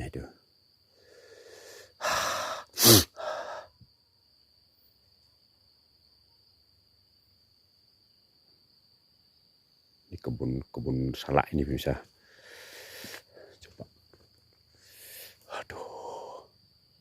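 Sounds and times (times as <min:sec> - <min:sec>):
cricket chirring: 0:00.0 - 0:17.0
person exhaling and sighing: 0:01.0 - 0:03.7, 0:12.2 - 0:13.6.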